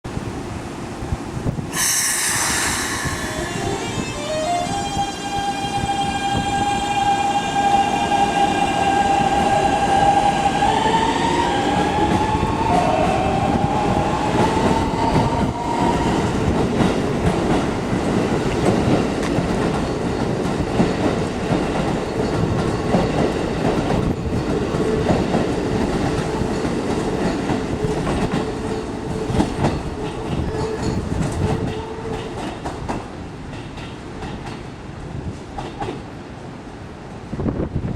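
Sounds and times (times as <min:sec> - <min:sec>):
train wheels clattering over rails: 0:11.2 - 0:34.7, 0:35.3 - 0:36.1.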